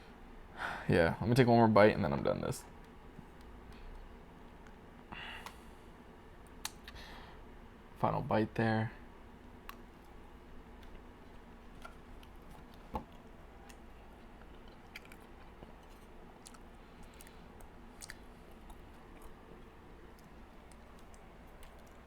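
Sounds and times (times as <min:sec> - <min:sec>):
chewing with wet mouth clicks: 0:11.8 - 0:22.0.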